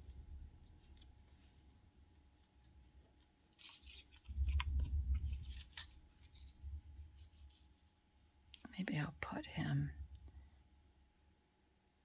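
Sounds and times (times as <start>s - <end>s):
paper rustling: 0.0s - 7.9s.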